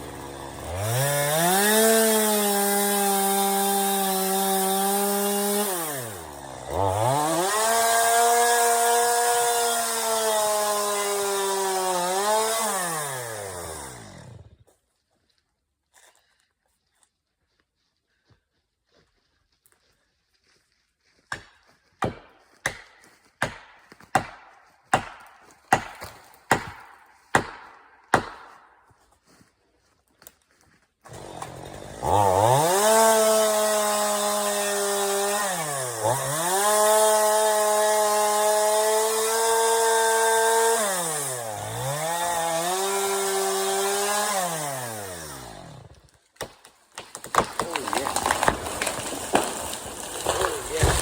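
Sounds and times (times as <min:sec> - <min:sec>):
chainsaw revving: 0:00.0 - 0:14.5, 0:31.1 - 0:46.0, 0:47.4 - 0:51.0.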